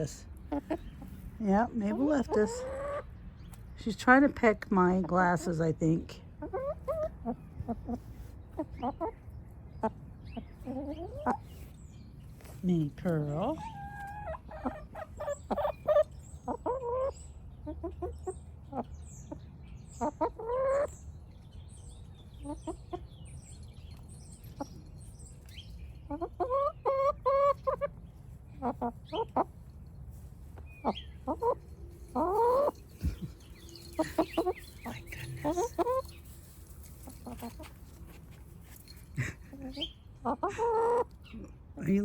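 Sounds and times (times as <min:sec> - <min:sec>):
hens clucking: 0:00.0 - 0:03.6, 0:04.8 - 0:11.7, 0:13.1 - 0:21.0, 0:26.0 - 0:38.3, 0:39.2 - 0:42.0.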